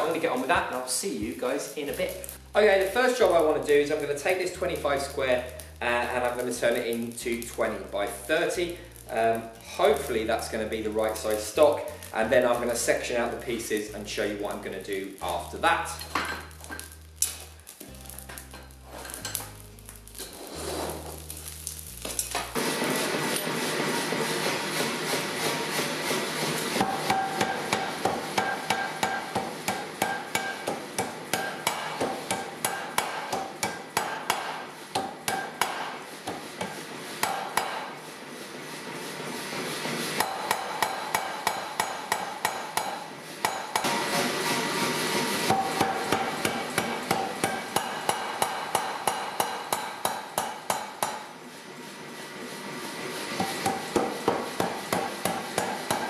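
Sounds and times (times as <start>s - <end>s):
hammer blows on hot steel: 20.9s - 38.1s, 39.8s - 51.4s, 53.3s - 56.0s.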